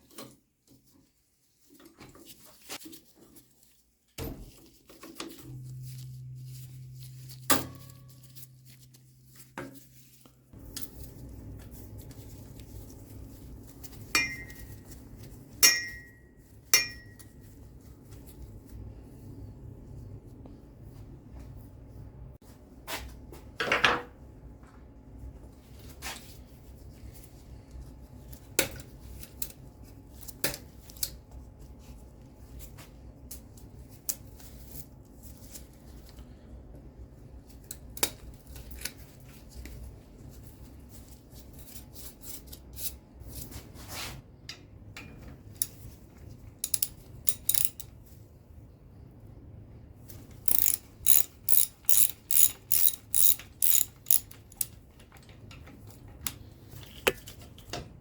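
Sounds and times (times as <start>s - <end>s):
metal tools clinking on bicycle: 14.1s - 14.9s, 15.6s - 17.3s, 46.6s - 47.9s, 50.5s - 54.8s
ratchet clicking: 46.6s - 47.9s, 50.5s - 54.7s.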